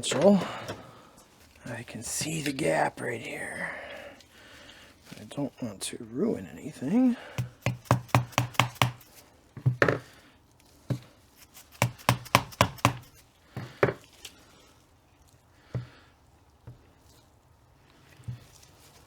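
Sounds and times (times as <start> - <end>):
sharp tool taps on metal: 7.4 - 10.0, 11.7 - 13.1.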